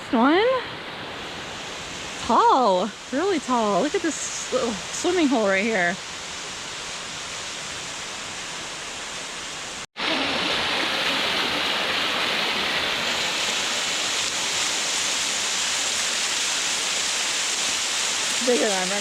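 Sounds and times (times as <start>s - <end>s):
waterfall rushing: 7.2s - 19.0s.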